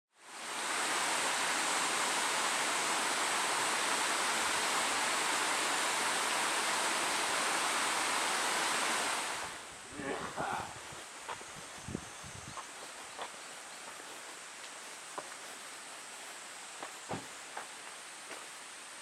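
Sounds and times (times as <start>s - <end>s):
waterfall rushing: 0.2s - 10.8s.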